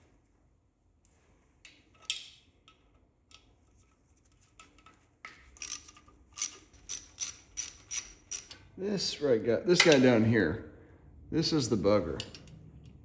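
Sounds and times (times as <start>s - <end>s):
socket ratchet clicking: 5.6s - 8.6s.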